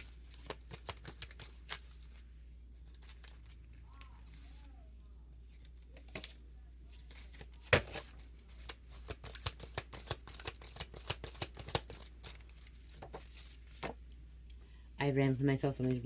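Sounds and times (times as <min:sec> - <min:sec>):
cards clicking and flicking: 0:00.4 - 0:01.9, 0:07.1 - 0:13.9.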